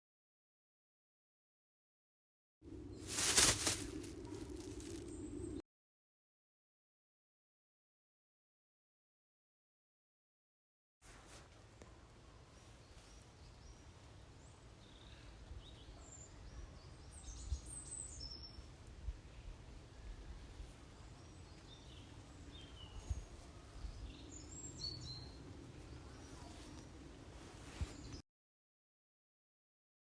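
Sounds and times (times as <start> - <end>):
birds chirping: 2.7 - 5.6
steady low rumble: 2.7 - 5.6.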